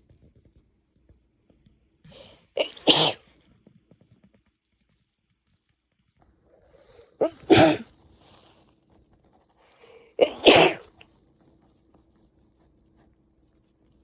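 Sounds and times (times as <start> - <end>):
woman sneezing: 2.6 - 3.2, 7.2 - 7.8, 10.2 - 10.9.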